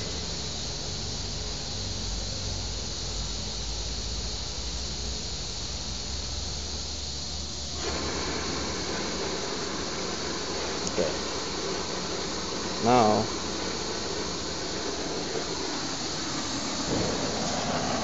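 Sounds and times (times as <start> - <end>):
cutting torch hissing: 0.0 - 18.0
mid-pitched rushing noise: 7.8 - 18.0
low hum: 7.9 - 18.0.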